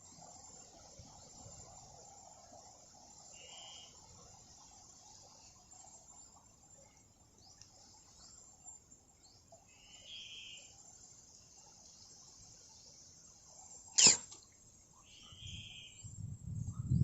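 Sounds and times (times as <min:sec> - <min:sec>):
insects chirping at night: 0:00.0 - 0:16.3
loud sharp crack: 0:14.0 - 0:14.4.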